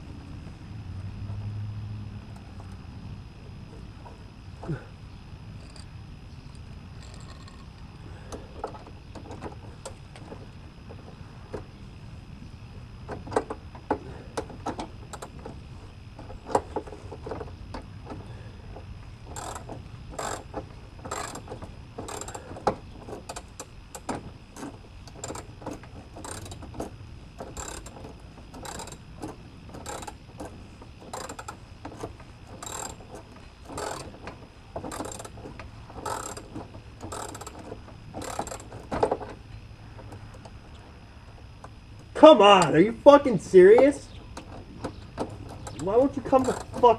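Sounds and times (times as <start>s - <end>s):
socket ratchet clicking: 19.3s - 22.4s, 23.2s - 28.0s, 28.6s - 29.1s, 29.8s - 34.2s, 36.0s - 38.8s.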